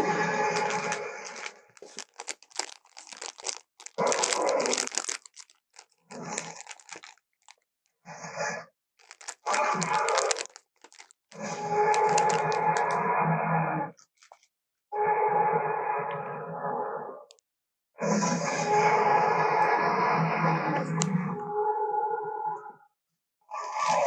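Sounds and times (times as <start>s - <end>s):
clicking and crackling: 0.0s - 7.6s, 9.0s - 13.0s.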